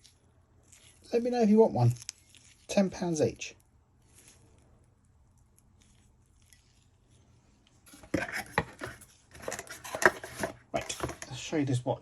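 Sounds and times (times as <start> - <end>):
small objects clicking and rustling: 1.8 - 2.7.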